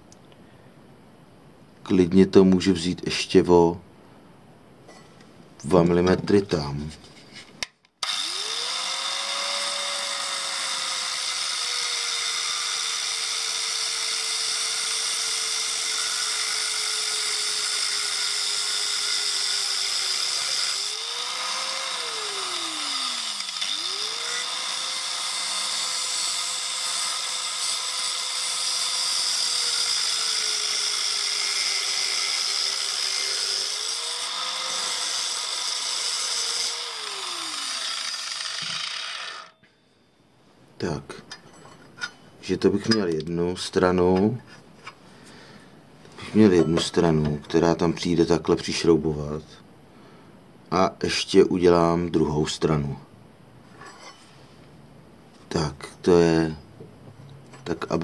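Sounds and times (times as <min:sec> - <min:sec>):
power tool cutting disc: 0:08.0 - 0:39.7.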